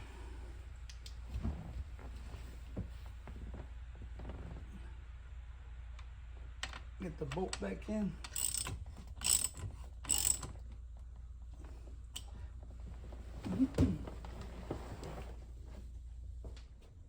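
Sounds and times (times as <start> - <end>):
ratchet wrench clicking: 8.3 - 10.6.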